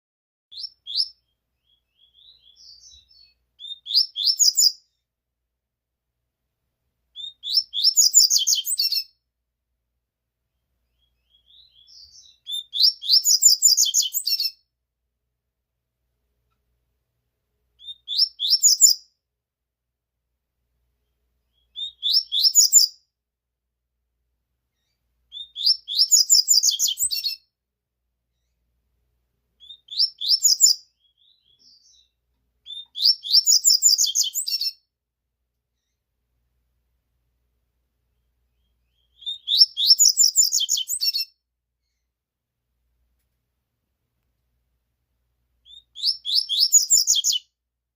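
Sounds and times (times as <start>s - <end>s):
bird chirping song: 0.5s - 5.2s, 7.1s - 9.3s, 10.4s - 14.8s, 17.6s - 19.3s, 20.8s - 23.2s, 24.6s - 27.6s, 28.2s - 28.8s, 29.5s - 35.0s, 35.6s - 36.2s, 38.0s - 42.2s, 45.6s - 47.7s.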